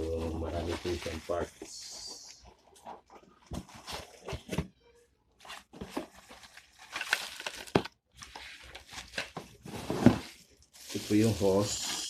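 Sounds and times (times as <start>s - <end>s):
plastic packaging crinkling: 5.5s - 12.0s.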